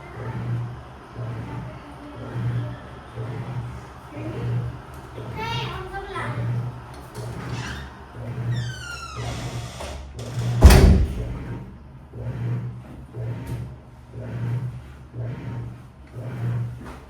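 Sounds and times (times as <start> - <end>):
washing machine motor hum: 0.0 - 17.0
loud thump: 10.6 - 11.8.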